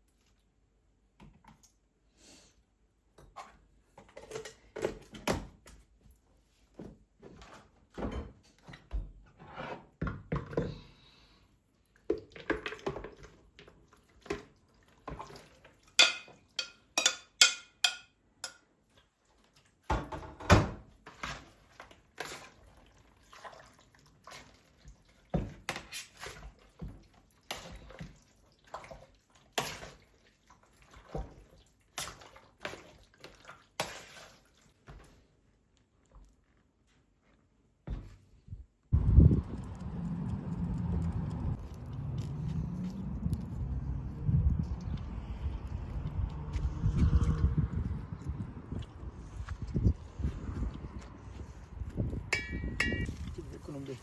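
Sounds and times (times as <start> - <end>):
objects knocking and tapping: 52.2 - 53.2.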